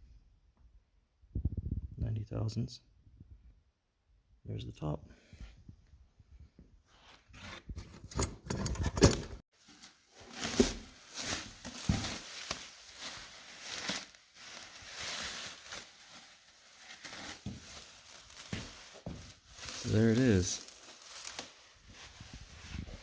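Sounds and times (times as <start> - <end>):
wrapping rustling with small bumps: 9.5 - 23.0.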